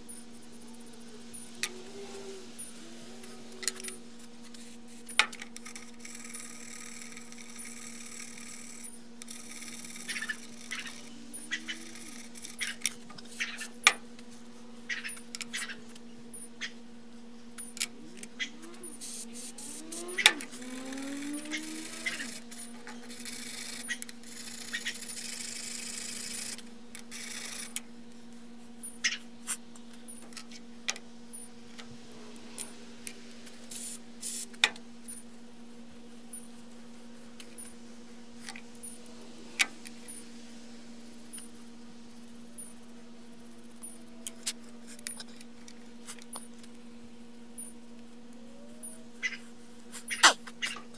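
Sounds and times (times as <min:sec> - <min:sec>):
steady low hum: 0:00.0 - 0:50.9
metal parts clicking and scraping: 0:03.6 - 0:14.0.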